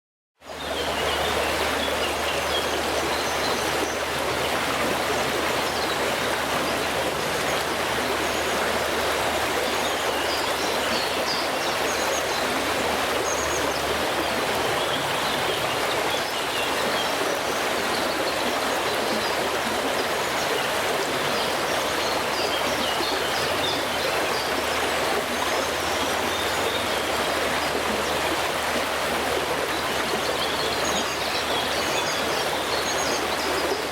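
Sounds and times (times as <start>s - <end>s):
birds singing faintly: 0.4s - 33.9s
small stream flowing: 0.4s - 33.9s.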